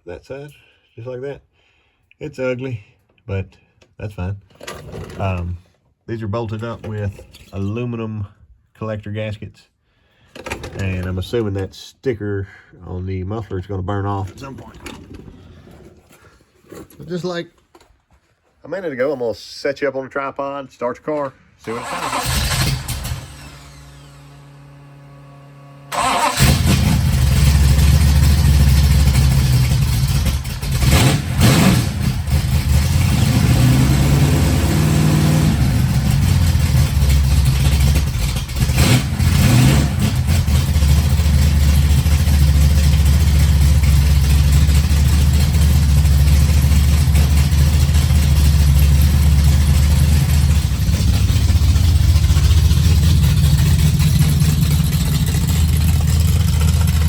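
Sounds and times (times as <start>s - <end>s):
car engine starting and revving: 21.6s - 57.0s
car engine idling: 21.7s - 57.0s.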